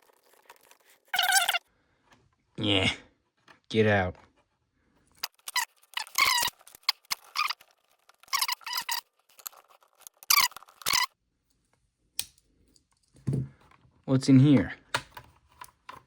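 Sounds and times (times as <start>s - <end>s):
plastic case squeaking: 1.1s - 1.6s, 5.2s - 11.2s.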